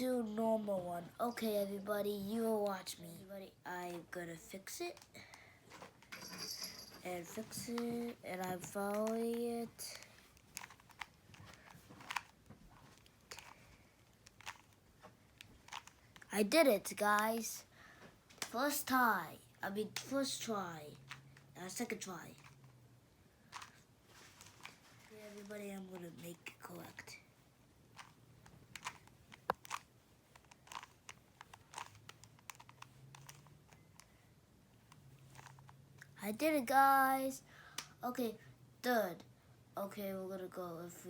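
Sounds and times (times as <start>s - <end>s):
puzzle cube plastic clicks: 3.8s - 6.1s, 7.1s - 17.6s, 19.8s - 22.8s, 23.4s - 27.2s, 27.9s - 36.2s, 37.8s - 38.0s.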